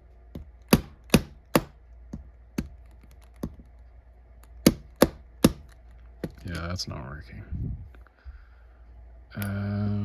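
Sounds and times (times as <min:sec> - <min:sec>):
hammer tapping a metal punch: 0:00.4 - 0:02.8, 0:04.6 - 0:06.4.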